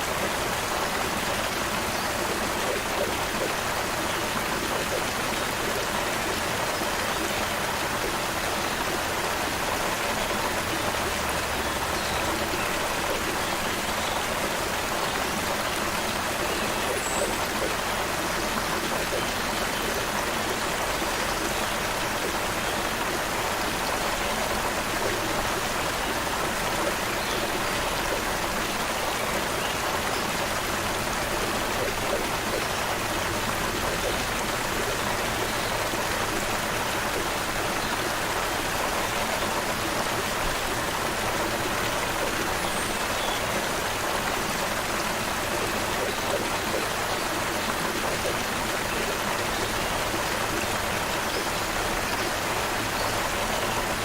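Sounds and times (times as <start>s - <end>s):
creek water flowing: 0.0s - 54.0s.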